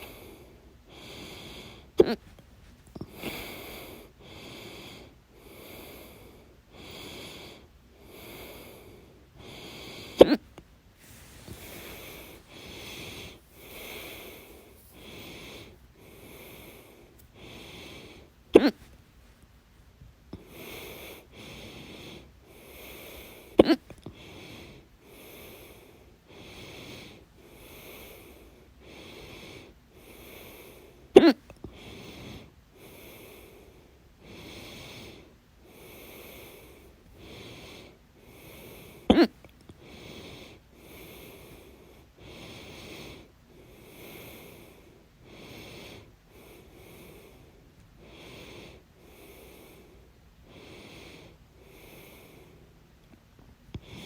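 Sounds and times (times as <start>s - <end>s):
person hiccuping: 2.0s - 2.2s, 10.2s - 10.5s, 18.6s - 18.9s, 23.6s - 23.9s, 31.2s - 31.5s, 39.1s - 39.4s
rhythmic breathing: 11.0s - 19.0s.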